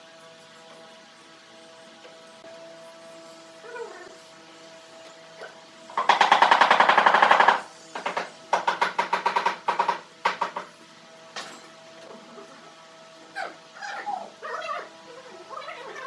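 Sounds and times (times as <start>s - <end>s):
rapid mechanical clicking: 5.9s - 10.7s.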